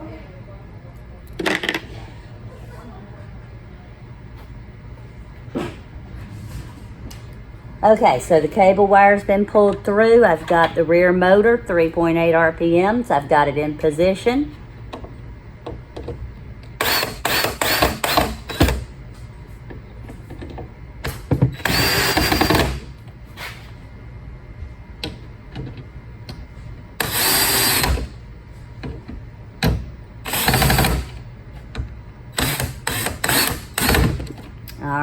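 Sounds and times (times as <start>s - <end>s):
cordless drill motor whine: 16.8s - 18.8s, 21.6s - 22.8s, 27.0s - 28.1s, 30.2s - 31.2s, 32.4s - 34.2s.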